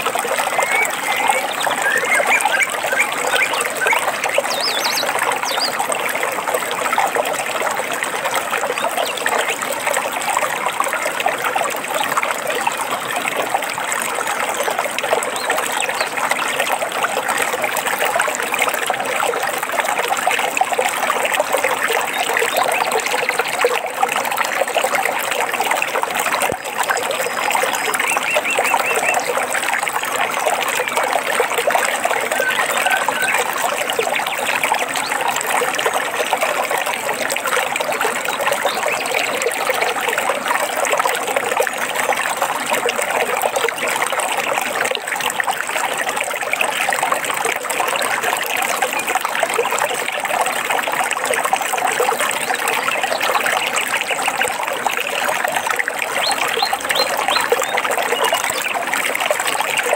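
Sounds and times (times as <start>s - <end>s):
stream water over stones: 0.0s - 59.9s
faint bird chirps: 0.4s - 5.8s.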